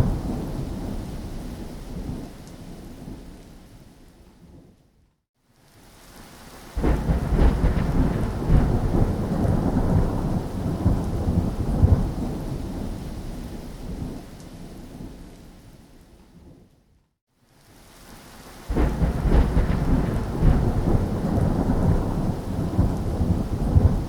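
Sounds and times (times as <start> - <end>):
thunder rumbling: 0.0 - 3.4, 6.8 - 15.3, 18.7 - 24.0
rain falling: 0.0 - 4.7, 5.4 - 16.6, 17.3 - 24.0.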